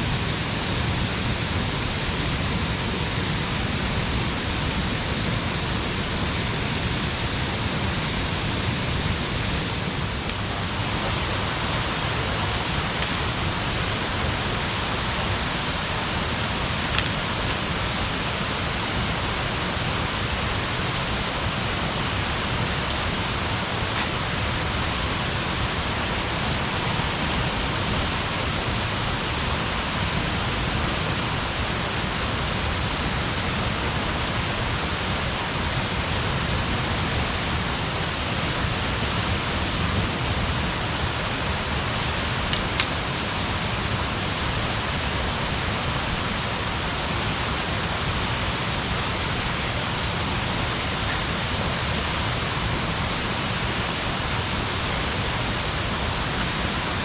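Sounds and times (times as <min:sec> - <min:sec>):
steady rushing noise: 0:06.9 - 0:28.6.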